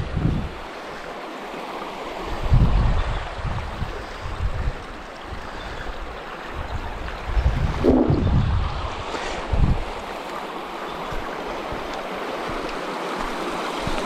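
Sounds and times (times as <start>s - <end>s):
wind buffeting microphone: 0.0s - 0.7s, 2.2s - 14.0s
waterfall rushing: 0.0s - 14.0s.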